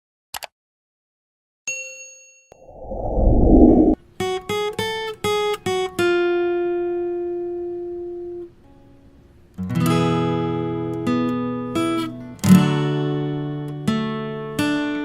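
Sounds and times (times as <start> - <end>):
acoustic guitar music: 9.6 - 15.0.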